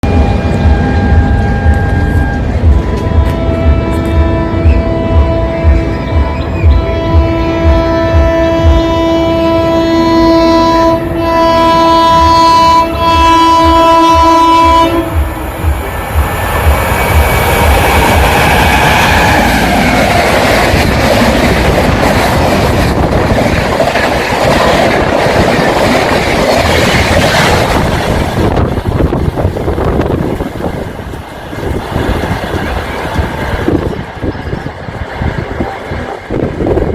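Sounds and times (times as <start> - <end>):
locomotive air horn: 0.0 - 15.5
train wheels clattering over rails: 13.1 - 36.9.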